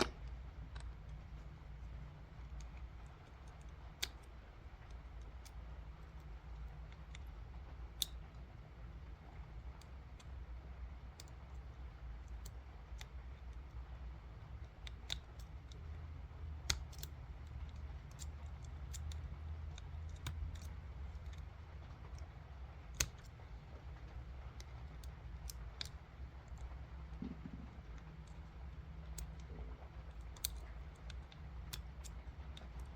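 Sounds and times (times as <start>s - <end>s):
low steady hum: 0.0s - 32.9s
lock pick metallic clicks: 2.4s - 4.3s, 7.9s - 8.4s, 11.1s - 13.6s, 14.6s - 15.8s, 16.6s - 21.5s, 22.9s - 23.4s, 27.3s - 32.9s.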